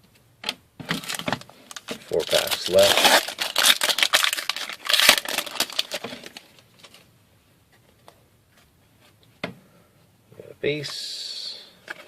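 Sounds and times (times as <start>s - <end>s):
card pack wrapper crinkling: 0.9s - 7.0s.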